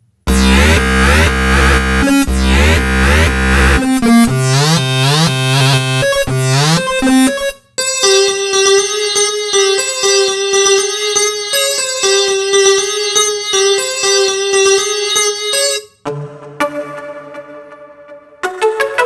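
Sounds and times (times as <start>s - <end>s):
heavy bass: 0.3s - 7.5s
synthesizer and keyboard chords: 0.3s - 19.0s.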